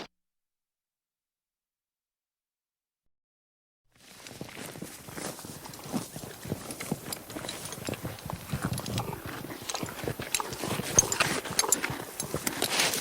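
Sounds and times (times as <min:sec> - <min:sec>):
horse hooves clip-clopping: 0:04.0 - 0:13.0.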